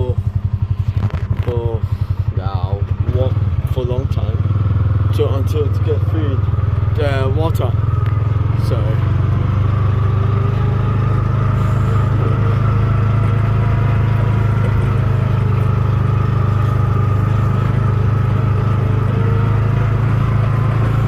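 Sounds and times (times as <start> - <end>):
vehicle engine running steadily: 0.0 - 21.0.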